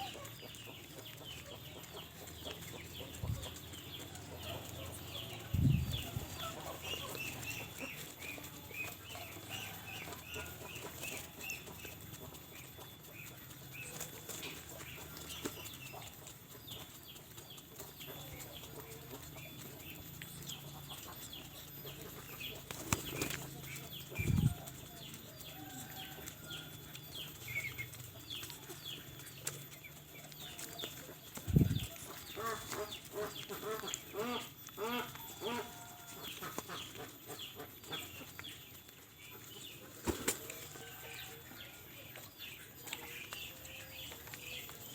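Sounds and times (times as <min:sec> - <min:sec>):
pigeons flapping wings: 0:21.8 - 0:25.4, 0:39.9 - 0:40.7.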